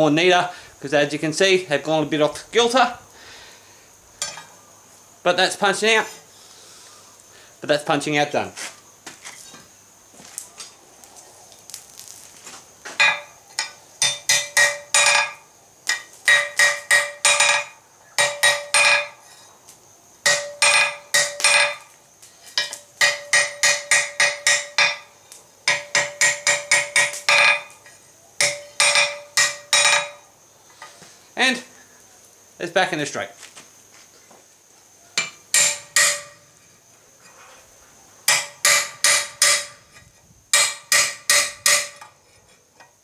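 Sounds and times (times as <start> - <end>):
hammer ringing on anvil: 13.0 - 19.2, 20.3 - 21.8, 22.6 - 25.1, 28.4 - 30.2, 35.2 - 36.4.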